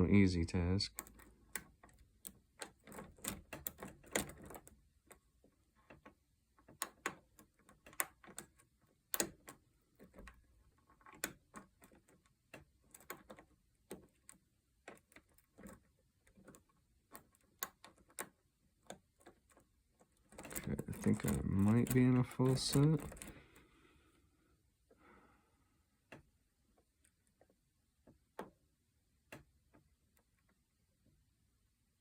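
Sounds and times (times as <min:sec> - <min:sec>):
metallic lock picking clicks: 0:00.9 - 0:05.2, 0:05.9 - 0:19.6, 0:20.2 - 0:23.4
light scraping in lock: 0:05.9 - 0:23.4.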